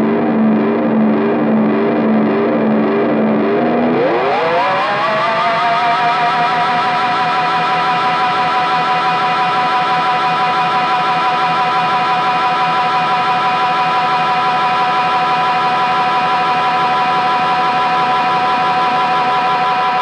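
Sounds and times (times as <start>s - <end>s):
electric echo drone: 0.0s - 14.7s.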